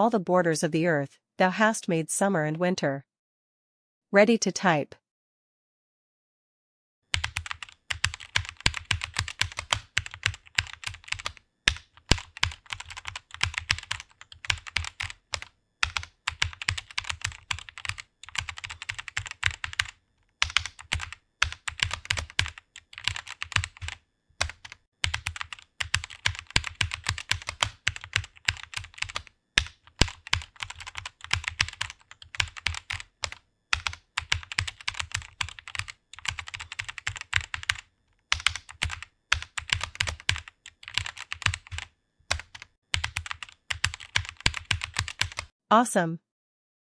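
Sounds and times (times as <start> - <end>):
keyboard typing: 7.1 - 45.5.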